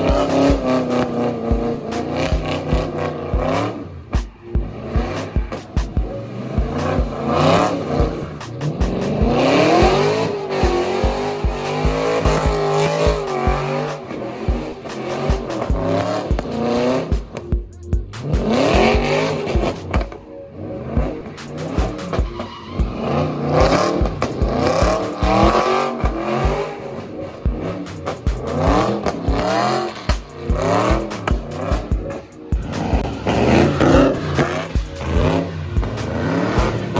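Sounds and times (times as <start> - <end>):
car engines revving: 0.0 - 36.9
hip-hop beat: 0.0 - 36.9
tyres squealing: 21.6 - 27.0.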